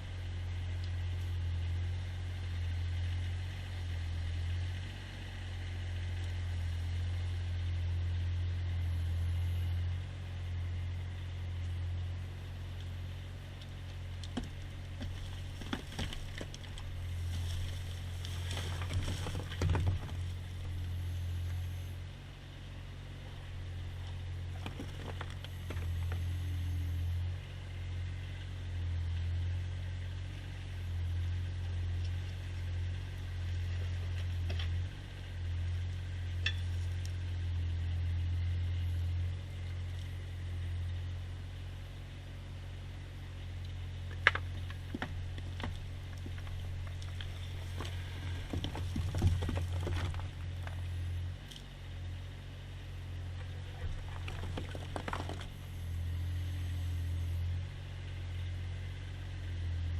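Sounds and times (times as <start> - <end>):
engine droning: 0.0 - 59.9
knocks and rattles: 14.3 - 17.0, 17.6 - 20.8, 24.5 - 26.2, 44.2 - 50.8, 53.4 - 55.6.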